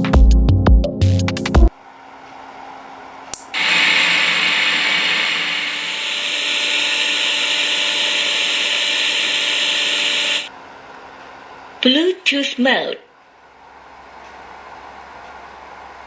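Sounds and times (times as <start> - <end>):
static hiss from speakers: 3.6 - 10.5.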